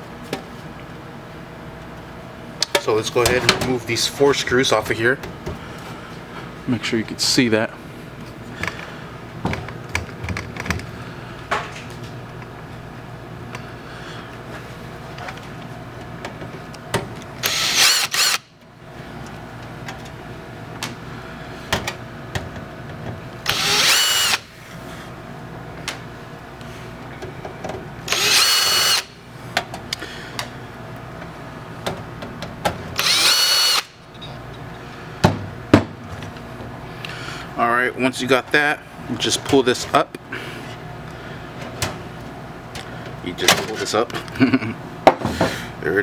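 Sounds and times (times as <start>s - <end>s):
power drill whining: 17.4s - 18.5s, 23.4s - 24.5s, 28.1s - 29.2s, 33.0s - 34.0s.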